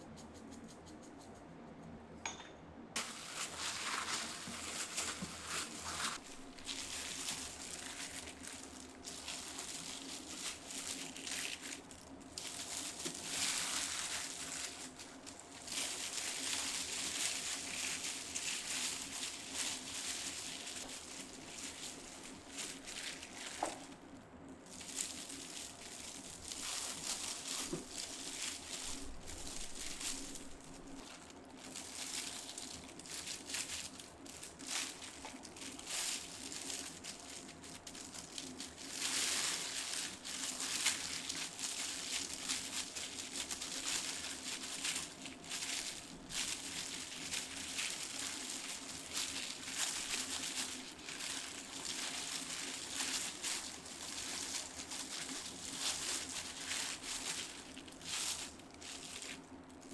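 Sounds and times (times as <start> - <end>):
faint steady hum: 0.0 - 59.9
crunching and rustling handling noise: 3.0 - 59.9.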